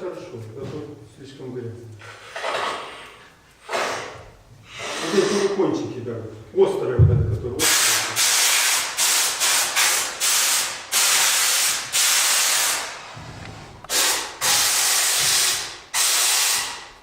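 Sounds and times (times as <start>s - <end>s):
spray paint hissing bursts: 7.6s - 13.1s, 13.9s - 17.0s.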